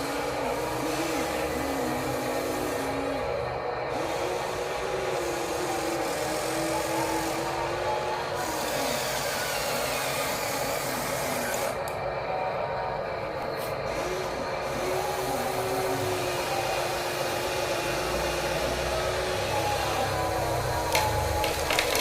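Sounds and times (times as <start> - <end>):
toy gear motors whirring: 3.9 - 11.9, 13.9 - 22.0.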